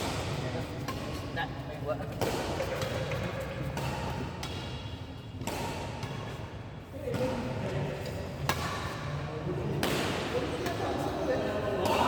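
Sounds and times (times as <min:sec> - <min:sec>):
badminton racket hitting shuttlecock: 0:00.0 - 0:06.4, 0:08.4 - 0:09.0
sports hall background noise: 0:00.0 - 0:12.0.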